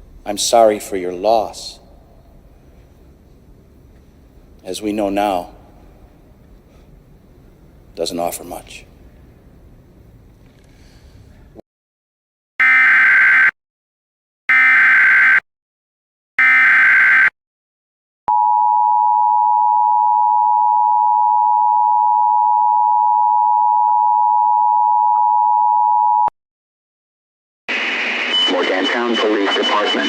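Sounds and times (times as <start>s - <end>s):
digital data tone bursts: 28.2s - 30.0s.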